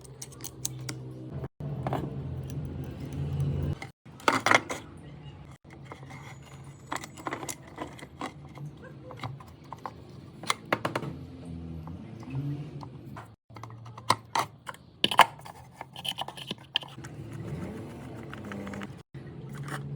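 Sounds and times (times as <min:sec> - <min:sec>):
metal parts and tools clinking: 0:05.6 - 0:10.8.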